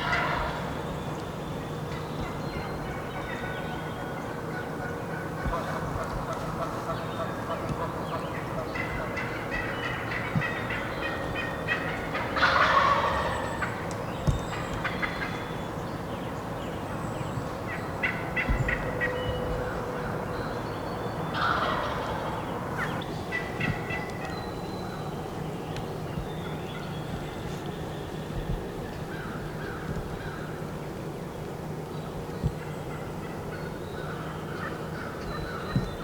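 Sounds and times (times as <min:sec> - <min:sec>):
turkeys gobbling: 0:00.0 - 0:00.7, 0:02.2 - 0:13.9, 0:14.5 - 0:15.4, 0:17.7 - 0:20.2, 0:21.3 - 0:24.3
songbirds chirping: 0:00.0 - 0:36.0.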